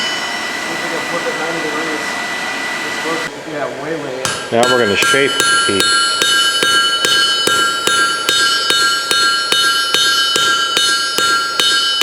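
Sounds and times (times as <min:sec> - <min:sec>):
anvil ringing: 0:04.2 - 0:12.0
hammer striking steel on anvil: 0:04.2 - 0:12.0.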